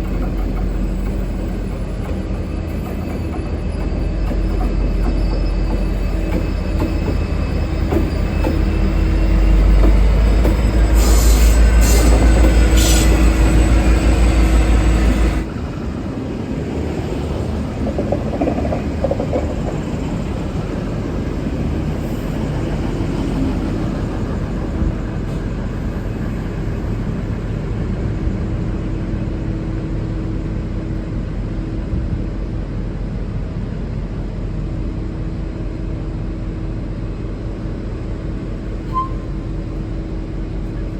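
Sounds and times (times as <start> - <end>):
train rumbling on rails: 0.0 - 40.9
short high squeals: 2.8 - 15.1, 38.8 - 39.7.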